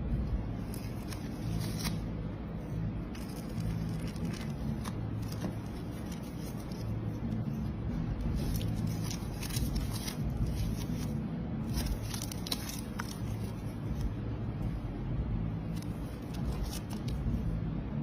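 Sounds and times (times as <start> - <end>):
steady low rumble: 0.0 - 18.0.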